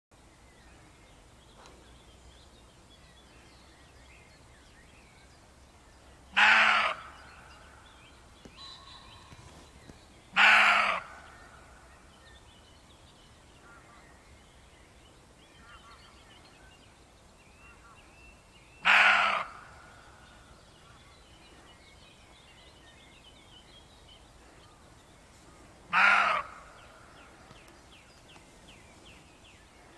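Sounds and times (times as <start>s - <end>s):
faint birdsong: 0.2s - 29.9s
deer calling: 6.4s - 7.2s, 10.4s - 11.3s, 18.8s - 19.7s, 25.9s - 27.2s.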